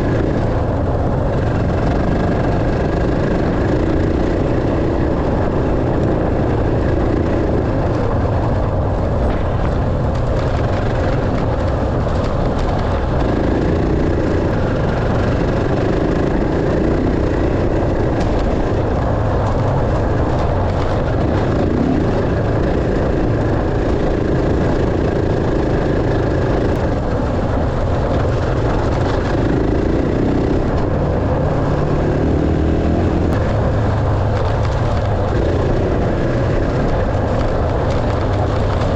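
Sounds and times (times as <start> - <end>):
dirt bike engine revving: 12.2 - 38.9.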